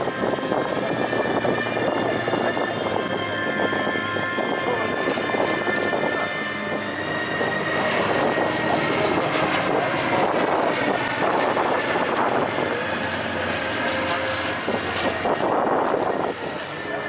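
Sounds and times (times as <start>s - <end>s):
propeller aircraft flying over: 0.0s - 17.0s.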